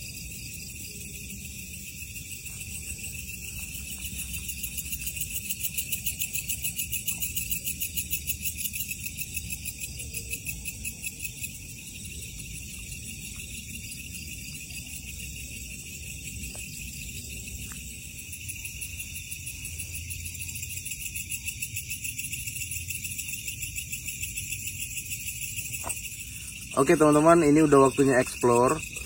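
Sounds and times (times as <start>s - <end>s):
crickets and insects trilling: 0.0s - 29.0s.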